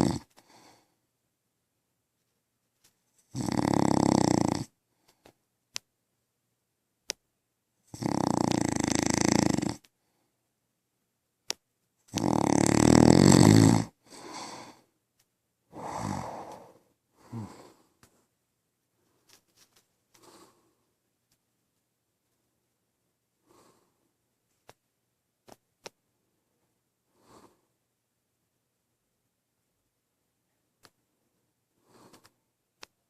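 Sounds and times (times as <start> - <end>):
man snoring: 0.0 - 0.3, 3.3 - 4.7, 7.9 - 9.8, 12.1 - 14.8, 15.7 - 17.8.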